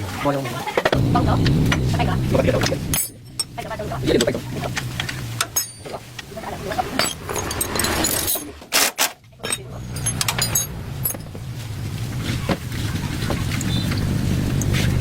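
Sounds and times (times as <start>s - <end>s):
metallic clinks and knocks: 4.2s - 8.6s, 9.2s - 11.4s.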